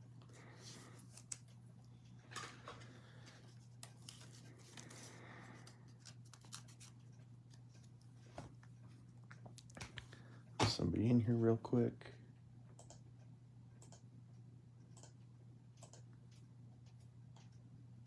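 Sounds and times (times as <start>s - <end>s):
cards clicking and rustling: 3.3s - 8.0s.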